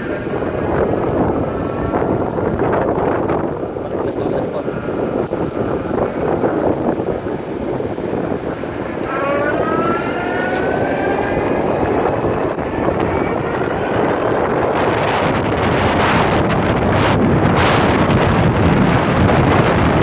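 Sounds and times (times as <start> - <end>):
wind on microphone: 0.0 - 20.0
electric motor whine: 8.6 - 15.5.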